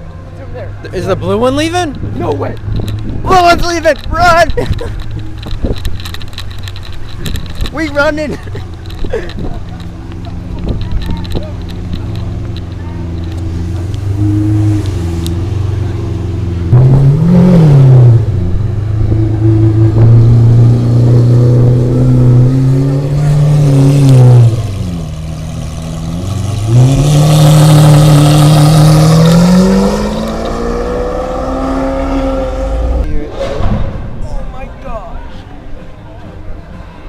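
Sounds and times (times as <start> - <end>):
sports car engine revving: 9.9 - 33.1.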